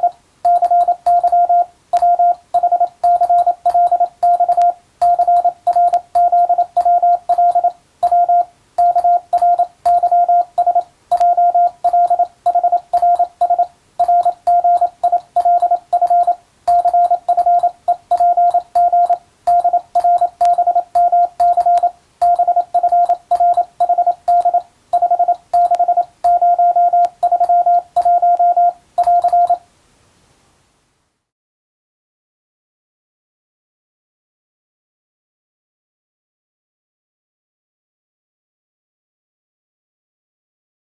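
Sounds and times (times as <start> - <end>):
faint keying clicks: 0.0 - 29.6
morse code beeps: 0.0 - 29.6.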